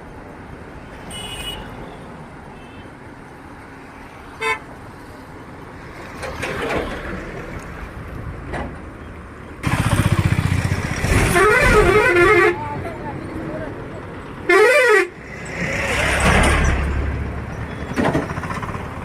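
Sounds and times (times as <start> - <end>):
road traffic: 0.0 - 19.0
car horn toot: 1.1 - 1.7, 11.1 - 12.6, 14.5 - 15.2
loud vehicle engine: 9.6 - 12.8, 14.5 - 19.0.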